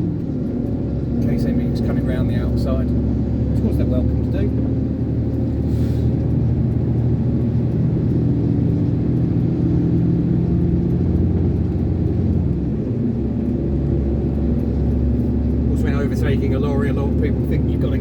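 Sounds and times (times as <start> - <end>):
diesel engine running: 0.0 - 18.0
road rumble: 0.0 - 18.0.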